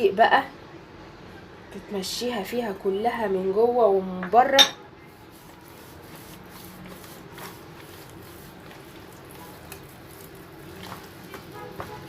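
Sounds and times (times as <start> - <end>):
hands squishing and rubbing: 5.3 - 12.0.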